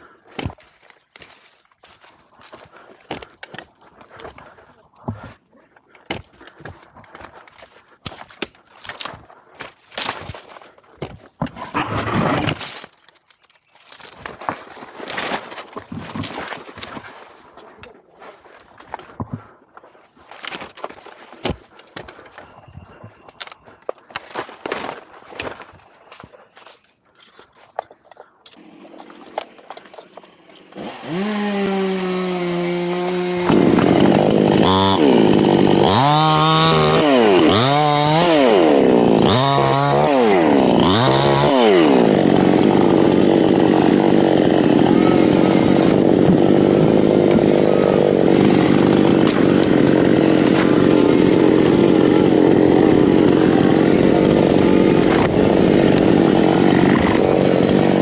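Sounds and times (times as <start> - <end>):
chainsaw revving and cutting wood: 11.7 - 13.1, 28.5 - 58.0.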